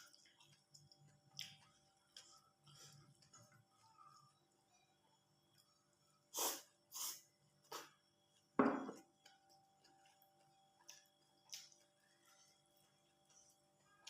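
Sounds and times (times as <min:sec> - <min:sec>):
breathy mouth noises from eating: 0:00.0 - 0:04.9.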